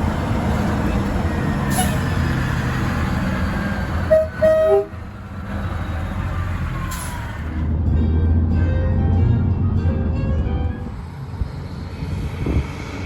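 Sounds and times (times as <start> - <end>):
rumble of passing trucks: 0.0 - 13.0
truck air horn blasts: 4.0 - 5.1.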